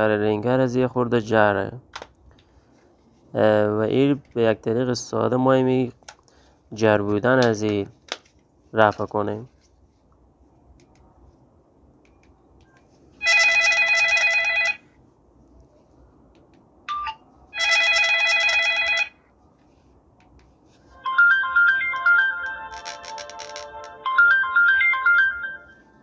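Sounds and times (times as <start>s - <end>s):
electronic phone ring bursts: 13.2s - 14.8s, 16.9s - 19.2s, 21.0s - 25.9s
beeped ringtone melody: 16.9s - 19.1s, 21.0s - 26.0s.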